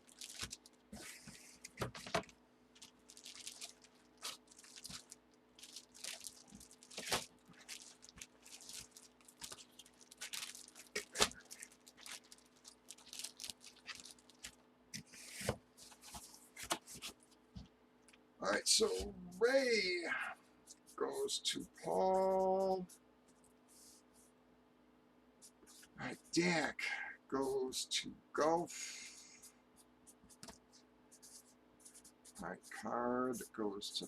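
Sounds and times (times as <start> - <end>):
plastic card sleeves crinkling: 0.0 - 17.4
faint steady hum: 0.0 - 34.0.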